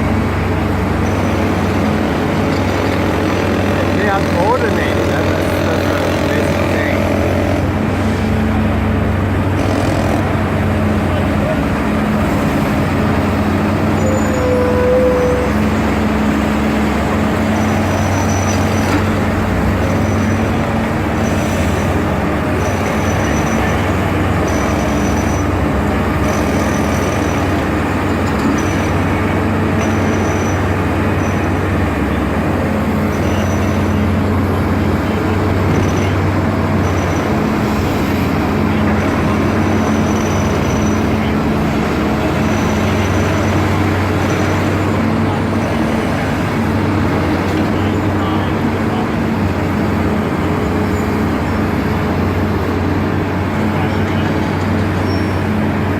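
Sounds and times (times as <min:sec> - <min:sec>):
excavator diesel engines droning: 0:00.0 - 0:55.9
short high tones: 0:13.9 - 0:15.9.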